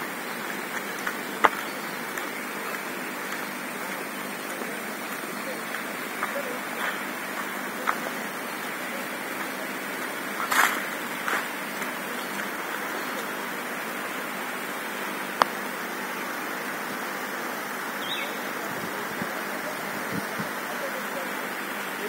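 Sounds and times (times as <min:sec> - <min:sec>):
water rushing: 0:00.0 - 0:22.0.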